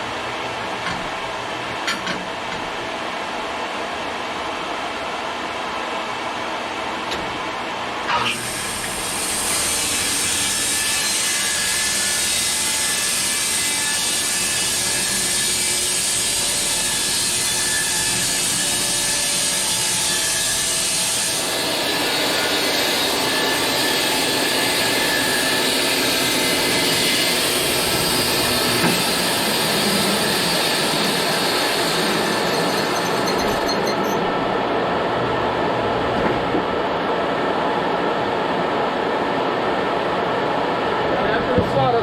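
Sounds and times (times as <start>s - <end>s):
bandsaw mill sawing log: 8.3s - 34.2s.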